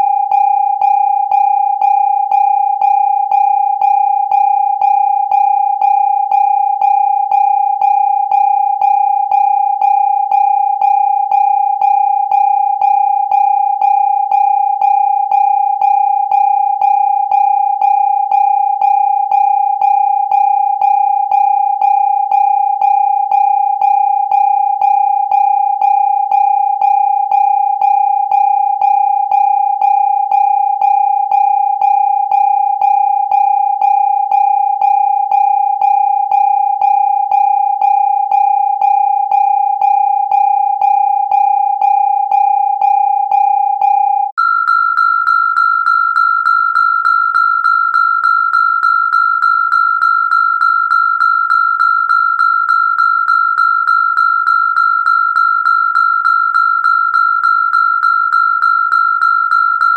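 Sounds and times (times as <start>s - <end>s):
pulsing electronic alarm tone: 0.0s - 59.9s
higher-pitched pulsing alarm tone: 39.0s - 59.9s.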